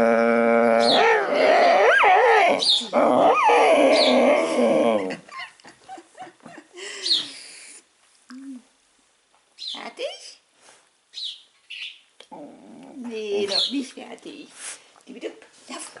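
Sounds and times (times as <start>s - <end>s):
dog moaning and whining: 0.0s - 5.2s.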